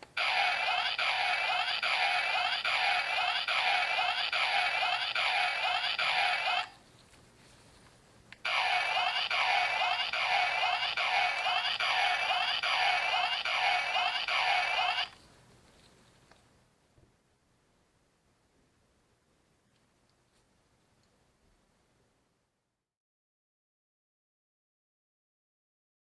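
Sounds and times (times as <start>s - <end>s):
toy looping electronic sound effect: 0.2s - 6.7s, 8.4s - 15.2s.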